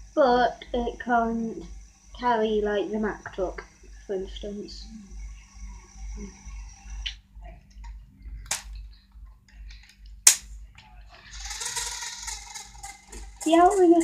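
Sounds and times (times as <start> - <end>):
plastic parts rattling: 11.3 - 13.5.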